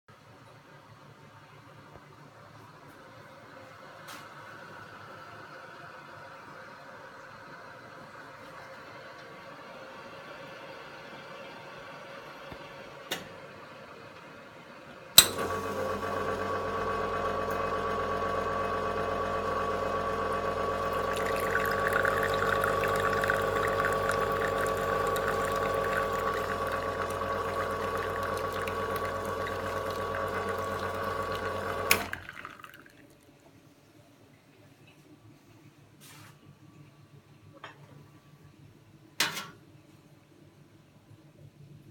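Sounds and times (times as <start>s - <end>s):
pump switch click: 15.2s - 15.6s
espresso machine pump humming: 15.2s - 33.0s.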